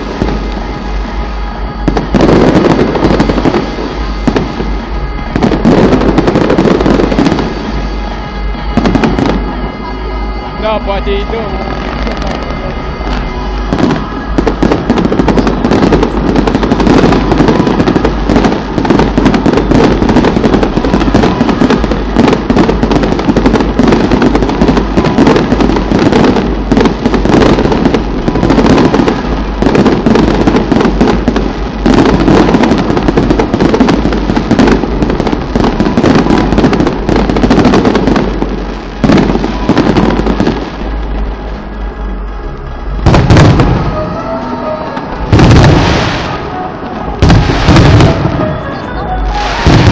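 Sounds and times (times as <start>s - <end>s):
fireworks and firecrackers bangs: 0.0s - 49.9s.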